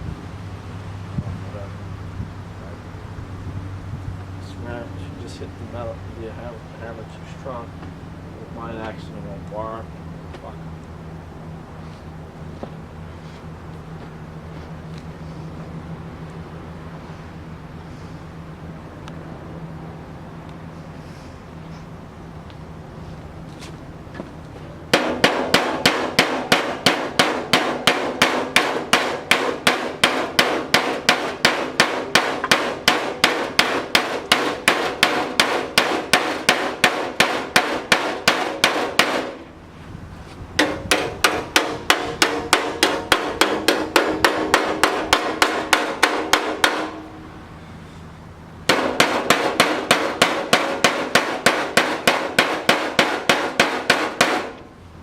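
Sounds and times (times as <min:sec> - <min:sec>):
hammer tapping sheet steel: 0:24.9 - 0:39.5, 0:40.6 - 0:47.3, 0:48.7 - 0:54.7.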